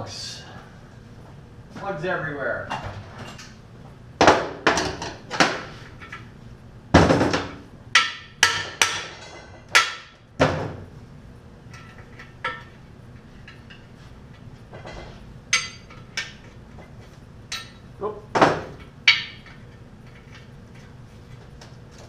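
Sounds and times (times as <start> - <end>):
hammer striking metal: 8.0 - 10.2, 15.5 - 16.0, 18.5 - 19.5.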